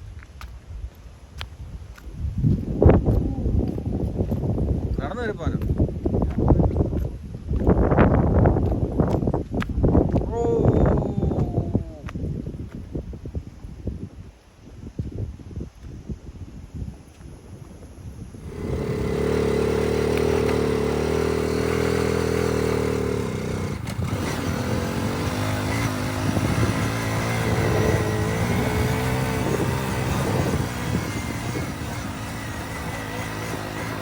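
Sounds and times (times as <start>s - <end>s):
motorcycle engine running: 18.3s - 34.0s.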